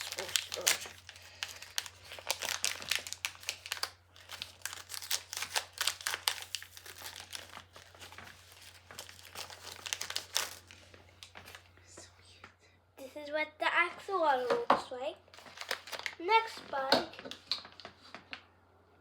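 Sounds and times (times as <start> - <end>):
packaging tearing: 0.0 - 11.6, 15.4 - 16.3
packaging crackling and rustling: 0.0 - 11.7, 15.3 - 18.4.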